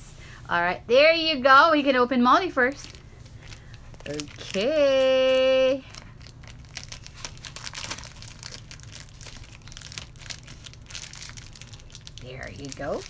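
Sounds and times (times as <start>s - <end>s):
toy packaging crinkling and tearing: 2.7s - 13.0s.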